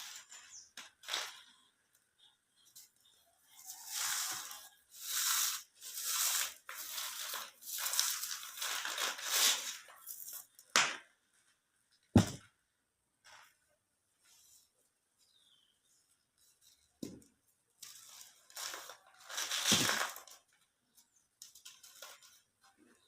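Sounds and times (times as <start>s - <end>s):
heavy thud: 12.2s - 12.4s
cement cubes crunching: 18.2s - 20.5s.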